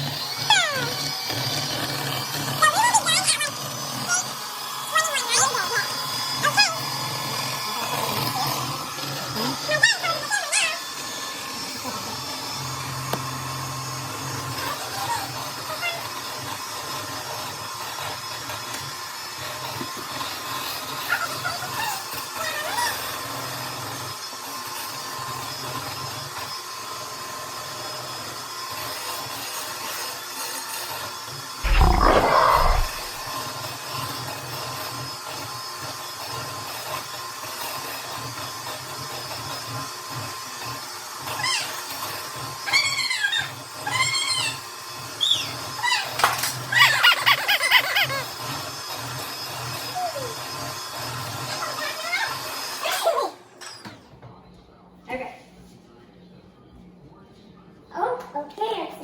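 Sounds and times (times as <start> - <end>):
electric hand mixer whirring: 0.0 - 5.0, 5.8 - 13.9.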